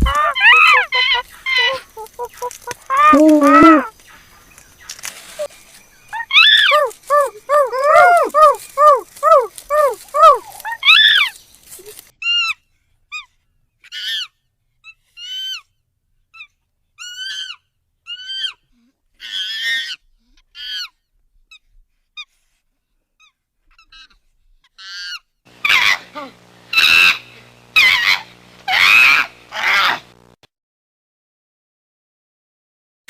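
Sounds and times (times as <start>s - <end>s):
chimpanzee calls: 0.0s - 4.0s, 6.1s - 12.5s, 24.8s - 30.2s
chimpanzee screaming: 0.0s - 4.0s, 6.2s - 12.5s, 24.8s - 30.2s
low hum: 25.5s - 30.4s.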